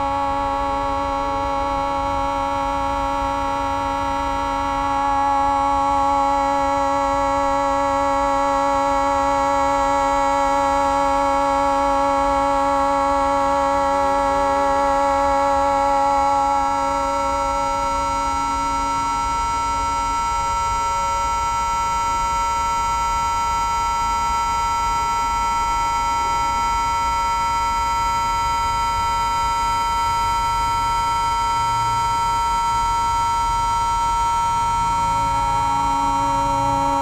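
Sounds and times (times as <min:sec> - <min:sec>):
low tone: 0:00.0 - 0:37.0
steady drone on one note: 0:00.0 - 0:37.0.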